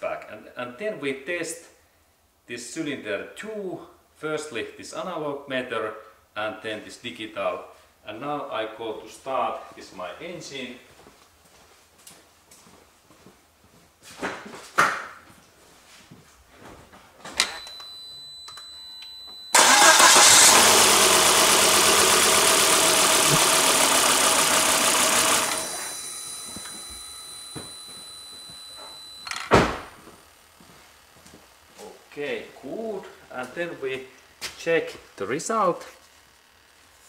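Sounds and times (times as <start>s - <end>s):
faint steady whine: 17.2s - 19.6s, 20.6s - 37.0s
engine cranking: 19.5s - 26.8s.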